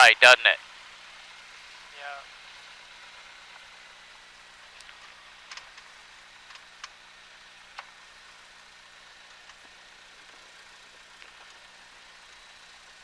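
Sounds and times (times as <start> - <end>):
light aircraft engine running: 0.2 - 13.0.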